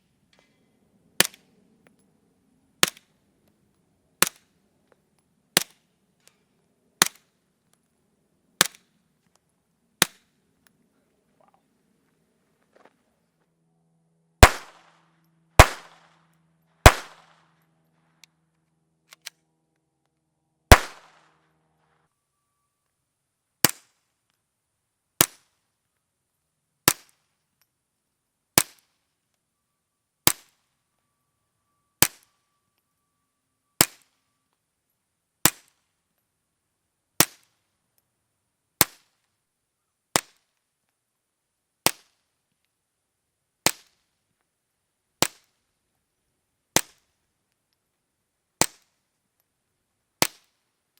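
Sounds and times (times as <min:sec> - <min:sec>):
suppressed gunshots: 0:14.4 - 0:14.9, 0:15.6 - 0:16.1, 0:16.8 - 0:17.3, 0:20.7 - 0:21.3.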